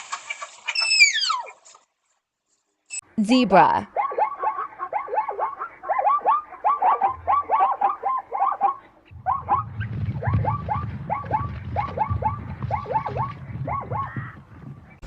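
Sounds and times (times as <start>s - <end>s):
zebra yelping barks: 3.9s - 14.4s
low rumble: 9.1s - 15.0s.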